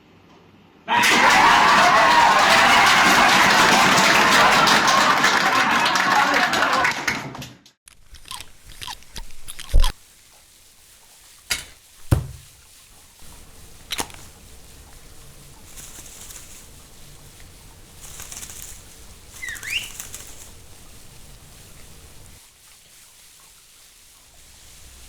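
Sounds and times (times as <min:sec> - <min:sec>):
rustling like flapping wings: 0:08.0 - 0:25.0
sharp knocks: 0:11.5 - 0:12.6.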